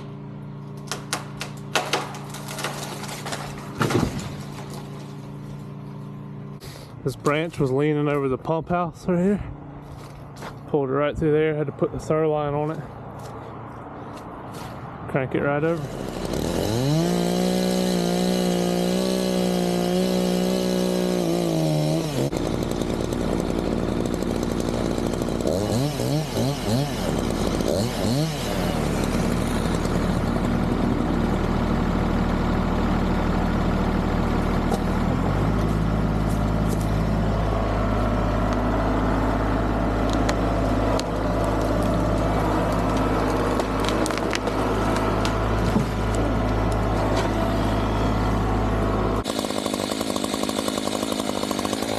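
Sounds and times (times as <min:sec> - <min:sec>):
chainsaw revving: 0:15.6 - 0:51.9
low engine drone: 0:28.7 - 0:49.3.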